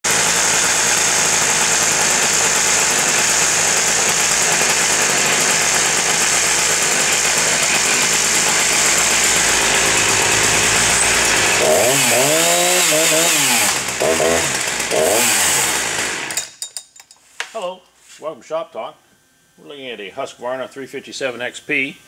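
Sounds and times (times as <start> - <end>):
chainsaw engine running: 0.1 - 16.5.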